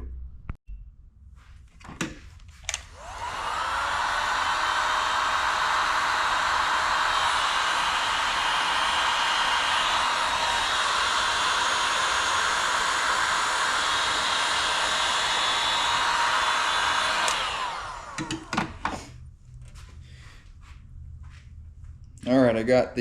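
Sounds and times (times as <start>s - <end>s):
heat gun blowing: 2.6s - 19.1s
heat gun winding down whine: 2.7s - 19.1s.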